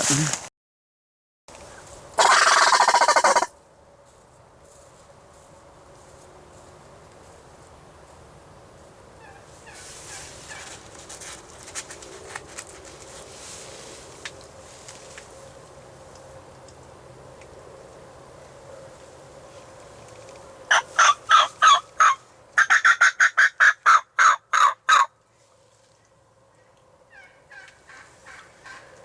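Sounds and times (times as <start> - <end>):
turkey gobbling: 2.2 - 3.5, 20.7 - 25.1, 27.1 - 28.9.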